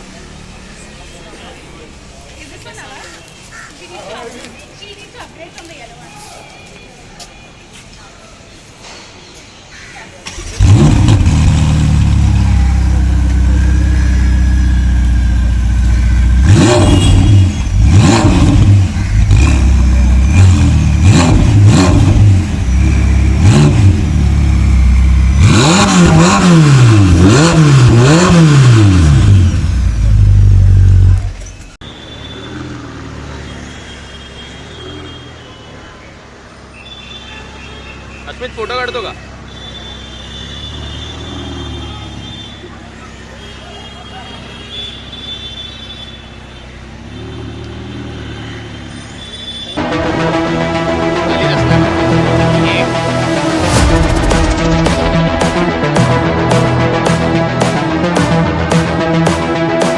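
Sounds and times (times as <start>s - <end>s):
faint street traffic: 0.0s - 58.8s
engine idling and revving: 10.3s - 31.8s, 49.8s - 59.9s.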